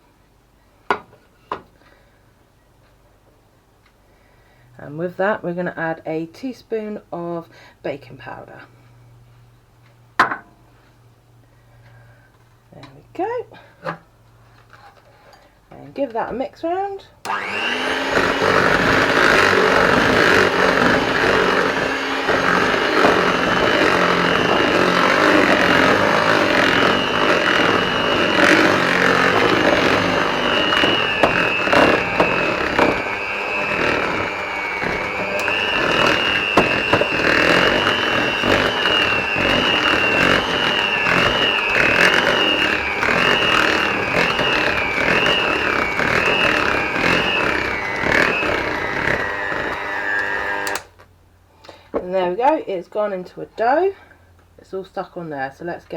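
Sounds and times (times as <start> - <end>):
electric hand whisk whine: 17.3 - 50.9.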